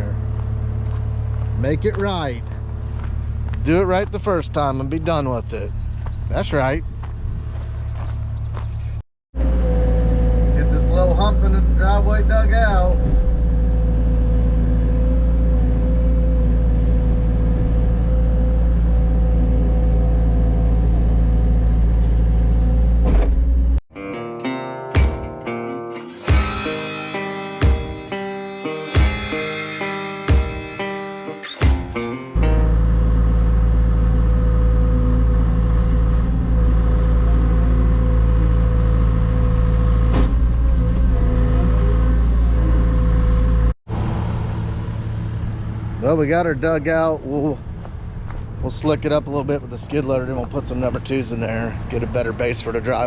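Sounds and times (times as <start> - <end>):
steady whine: 25.0 - 32.8.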